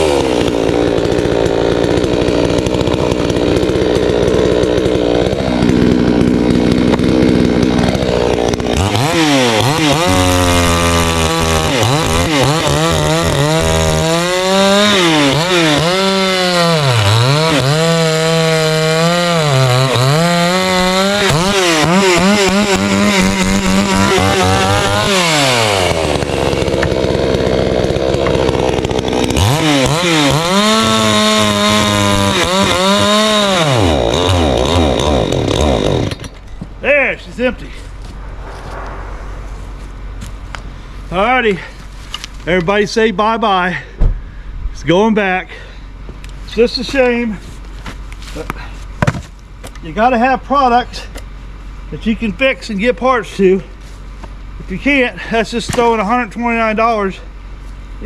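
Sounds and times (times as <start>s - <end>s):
chainsaw engine revving: 0.0s - 36.5s.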